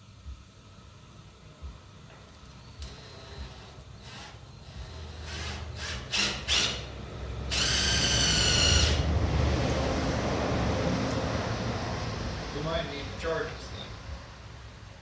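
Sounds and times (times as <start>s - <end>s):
impact driver whining: 2.8s - 9.1s.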